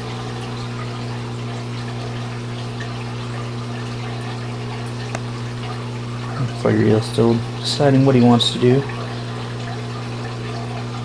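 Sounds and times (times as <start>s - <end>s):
aquarium pump humming: 0.0s - 11.0s
water running through overflow: 0.0s - 11.0s.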